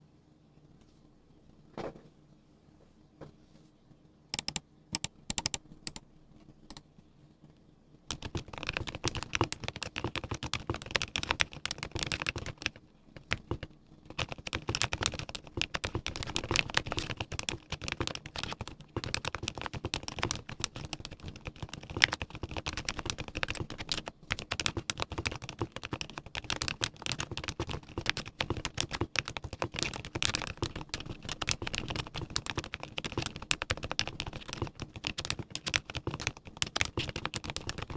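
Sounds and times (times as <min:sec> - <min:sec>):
typing on mechanical keyboard: 0:04.4 - 0:06.0, 0:08.1 - 0:37.9.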